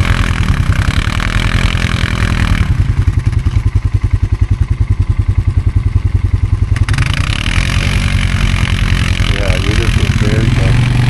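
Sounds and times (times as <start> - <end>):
atv engine idling: 0.0 - 11.0.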